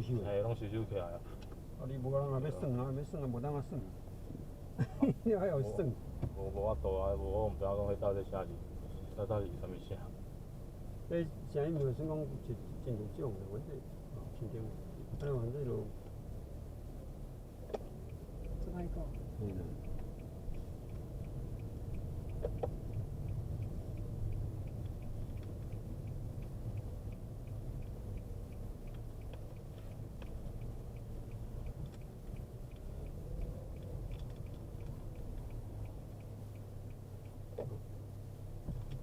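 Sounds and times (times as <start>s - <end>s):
road and engine rumble in car: 0.0s - 39.0s
faint fast ticking: 6.5s - 39.0s.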